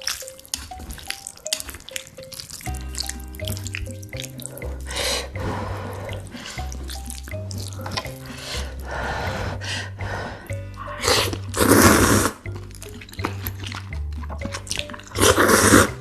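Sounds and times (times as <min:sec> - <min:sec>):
background music with bass: 0:02.6 - 0:16.0.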